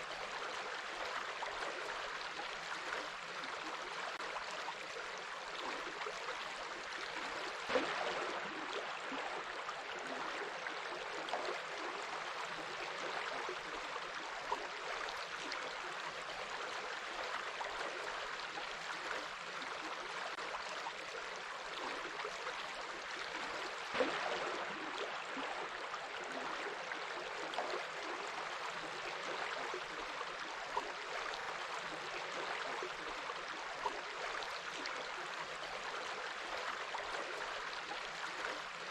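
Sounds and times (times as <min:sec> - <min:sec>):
stream flowing over rocks: 0:00.0 - 0:38.9
water splashes: 0:05.5 - 0:11.9, 0:22.8 - 0:35.2.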